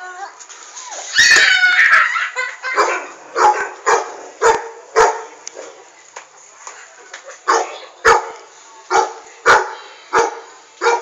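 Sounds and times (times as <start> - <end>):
dog barking: 2.8 - 5.3, 7.5 - 11.0.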